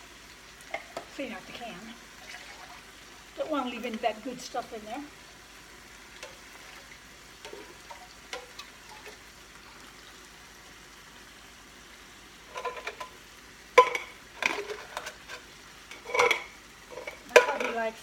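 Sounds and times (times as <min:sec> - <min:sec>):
sauce sizzling in a pot: 0:00.0 - 0:18.0
metal clanking against pot: 0:12.5 - 0:13.2, 0:13.8 - 0:17.9.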